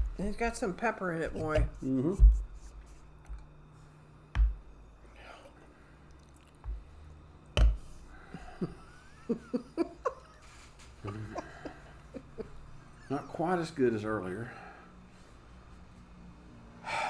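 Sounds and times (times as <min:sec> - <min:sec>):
dull thumps: 0:01.3 - 0:02.8, 0:04.3 - 0:04.7, 0:07.6 - 0:07.9
sipping and lip-smacking: 0:06.0 - 0:06.7.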